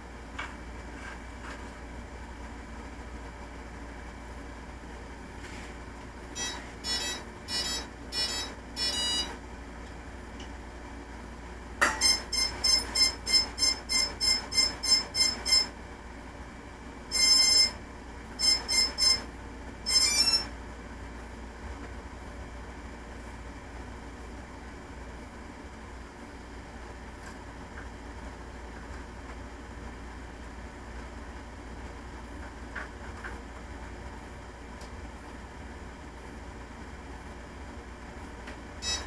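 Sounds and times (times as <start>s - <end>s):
electronic status beeps: 6.4s - 9.4s, 11.8s - 15.7s, 17.1s - 17.8s, 18.4s - 19.3s, 19.9s - 20.5s.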